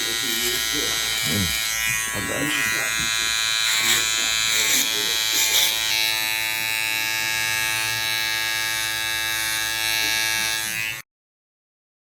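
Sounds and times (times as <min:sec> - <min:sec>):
electric hair clippers buzzing: 0:00.0 - 0:11.1.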